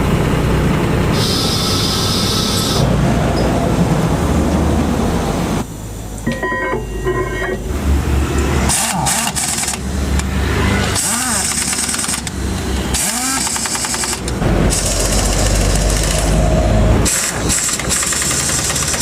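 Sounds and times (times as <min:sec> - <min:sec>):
truck engine rumbling: 0:00.0 - 0:19.0
hissing bursts: 0:01.1 - 0:02.9, 0:08.6 - 0:10.0, 0:10.9 - 0:19.0.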